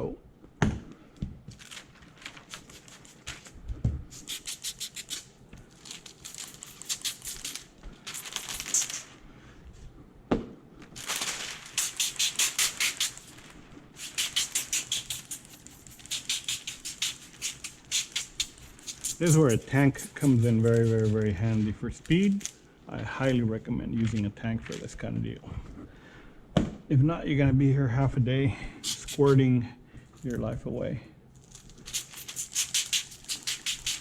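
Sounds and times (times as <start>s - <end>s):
trigger spray bottle squirting: 11.8s - 13.3s, 14.0s - 20.4s, 31.9s - 34.0s.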